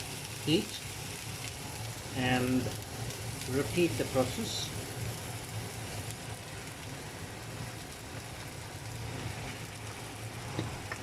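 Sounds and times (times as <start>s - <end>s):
food sizzling in a pot: 0.0s - 11.0s
low steady hum: 0.0s - 11.0s.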